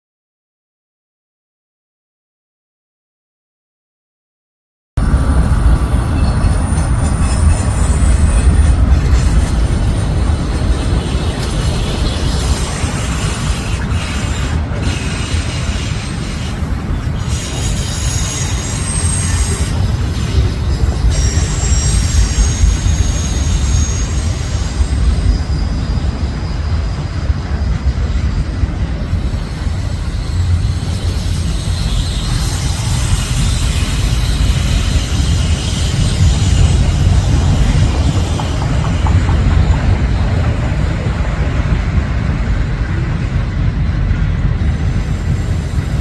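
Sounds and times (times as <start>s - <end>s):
high wheel squeals: 5.0s - 40.9s
train wheels rumbling on rail: 5.0s - 46.0s.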